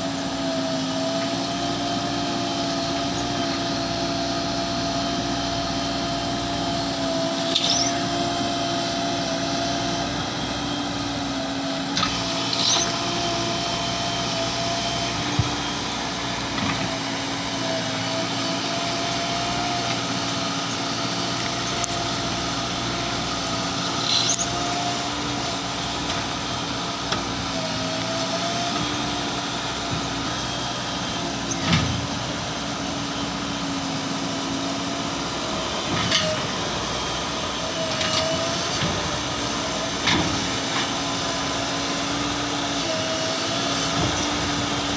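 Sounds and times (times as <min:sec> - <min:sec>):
diesel engine running steadily: 0:00.0 - 0:44.9
high squeaks: 0:07.4 - 0:08.1, 0:12.5 - 0:13.0, 0:24.0 - 0:24.7.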